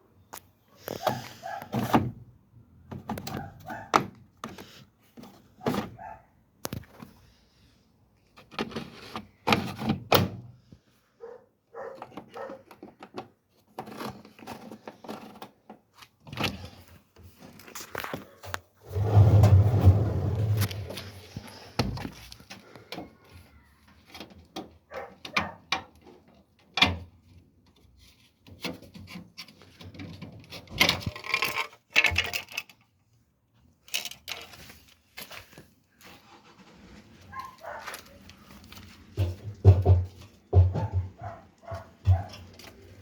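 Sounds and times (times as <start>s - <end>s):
dog barking: 1.1s - 1.7s, 3.4s - 4.0s, 6.0s - 6.3s, 11.2s - 12.7s, 24.9s - 25.7s, 37.3s - 38.1s, 40.7s - 42.5s
washing machine knocks and clunks: 39.5s - 41.2s.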